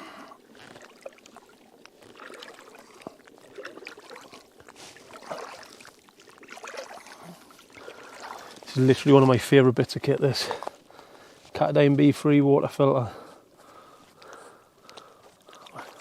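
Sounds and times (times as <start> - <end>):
water splashing and trickling: 0.0 - 16.0.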